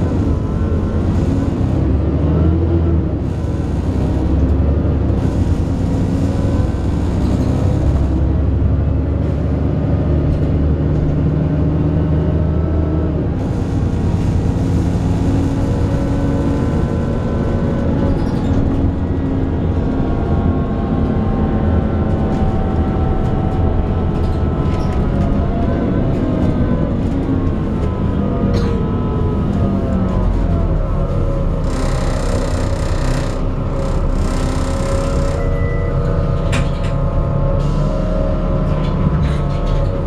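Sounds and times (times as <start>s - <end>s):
bus engine rumble: 0.0s - 40.0s
whining tones rising in pitch: 22.7s - 37.6s.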